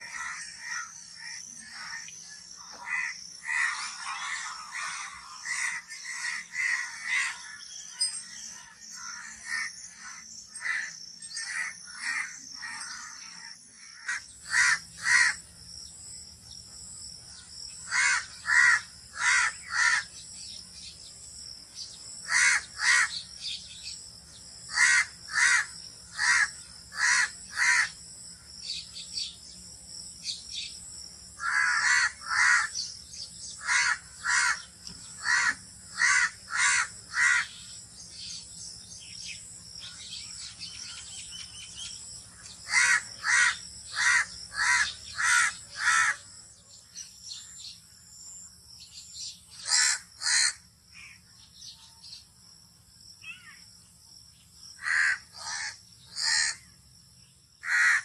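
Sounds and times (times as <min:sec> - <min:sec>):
crows cawing: 0:00.0 - 0:02.1, 0:02.7 - 0:07.7, 0:08.6 - 0:15.4, 0:17.8 - 0:20.2, 0:22.2 - 0:23.3, 0:24.7 - 0:28.0, 0:31.4 - 0:32.8, 0:33.5 - 0:37.7, 0:42.3 - 0:46.2, 0:49.6 - 0:51.1, 0:54.8 - 0:56.7, 0:57.6 - 0:58.0.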